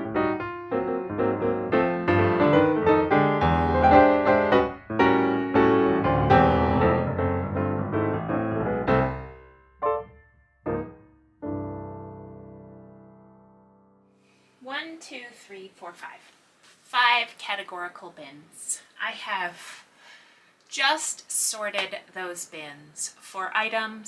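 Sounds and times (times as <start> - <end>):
lively piano music: 0.0 - 14.0.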